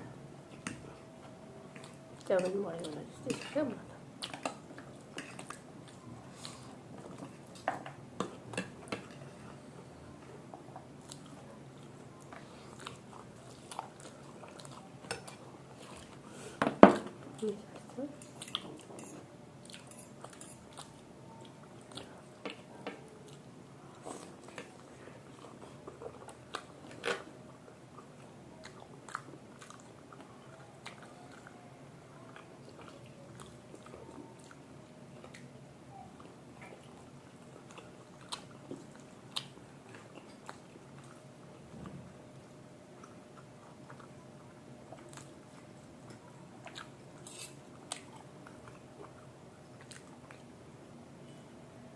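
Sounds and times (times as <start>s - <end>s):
people chewing and biting: 10.6s - 16.3s, 18.3s - 50.5s.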